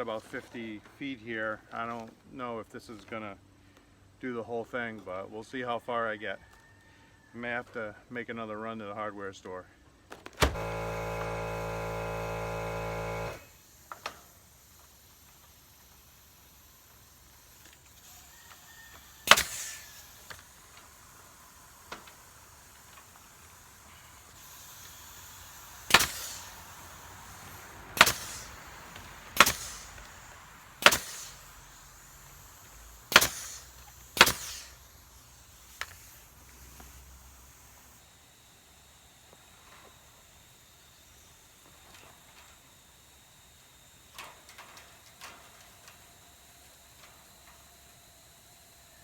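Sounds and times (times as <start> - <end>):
sharp snaps: 19.3 - 20.4, 24.8 - 26.7, 27.9 - 30.2, 30.8 - 31.6, 32.7 - 34.8.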